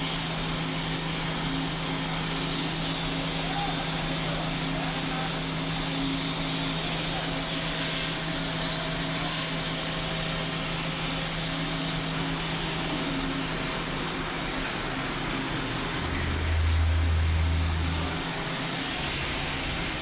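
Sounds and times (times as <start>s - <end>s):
engine running: 11.6s - 20.0s.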